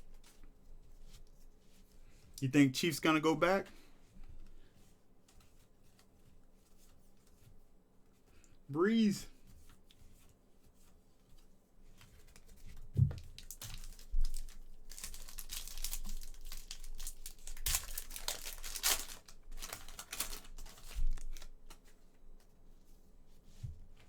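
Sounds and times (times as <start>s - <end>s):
foil wrapper tearing and crinkling: 13.2s - 21.6s.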